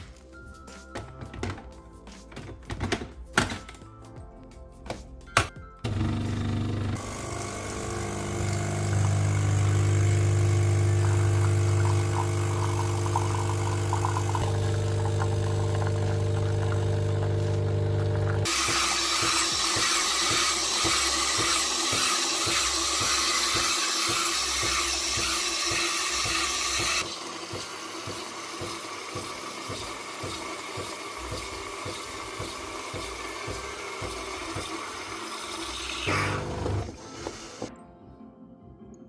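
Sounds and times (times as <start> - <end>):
pump humming: 5.9 - 37.6
water and steam hissing: 7.0 - 37.7.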